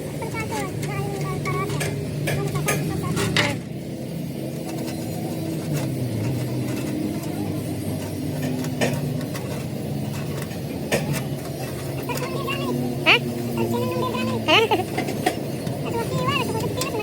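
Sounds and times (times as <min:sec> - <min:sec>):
machine humming: 0:00.0 - 0:17.0.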